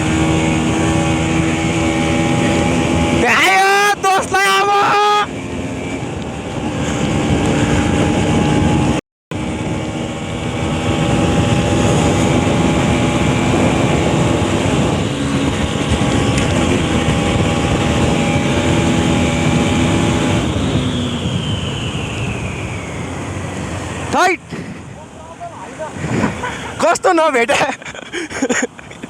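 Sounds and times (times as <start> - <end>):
wind rush over microphone: 0.0 - 25.2, 25.8 - 27.2
motorcycle engine running: 5.3 - 27.4
falling tone: 18.2 - 24.2.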